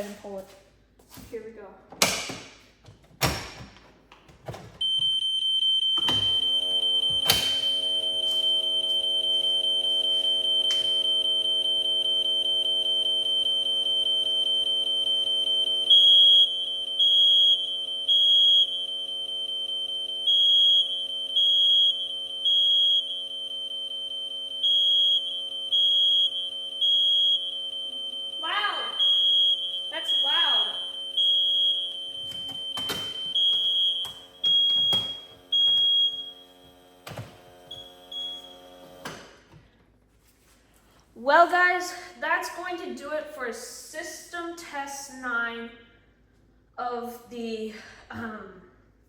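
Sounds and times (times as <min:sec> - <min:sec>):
high beeper in groups of beeps: 0:04.8 - 0:18.9, 0:19.5 - 0:36.3
high-pitched alarm tone: 0:04.8 - 0:36.4.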